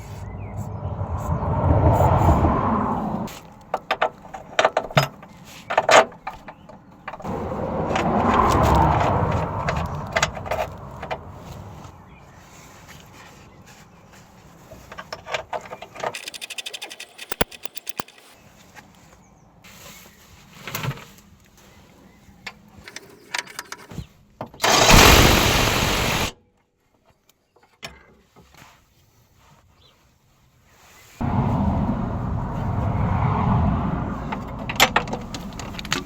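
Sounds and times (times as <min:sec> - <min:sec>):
metal tools clicking and knocking: 0:16.0 - 0:18.3, 0:35.0 - 0:36.0
run of even clicks: 0:16.2 - 0:18.3
loud hissing burst: 0:24.6 - 0:26.3.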